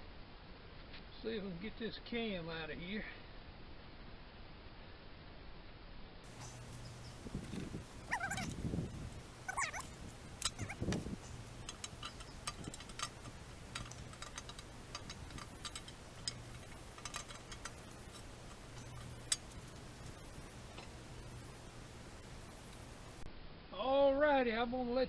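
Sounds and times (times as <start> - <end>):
metallic clicks and taps: 9.8 - 20.2.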